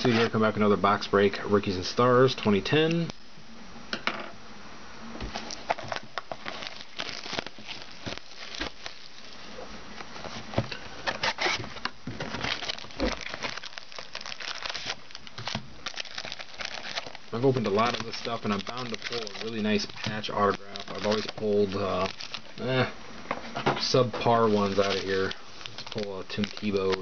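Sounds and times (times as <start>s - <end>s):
packaging crinkling and tearing: 5.3s - 22.7s, 24.2s - 27.0s.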